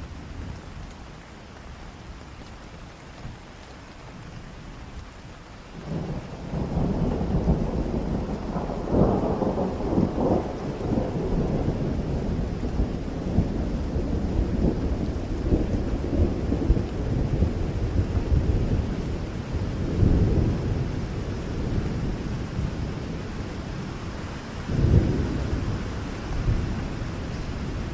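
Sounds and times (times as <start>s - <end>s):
rain falling: 0.0s - 27.9s
rumble of thunder: 5.8s - 27.9s.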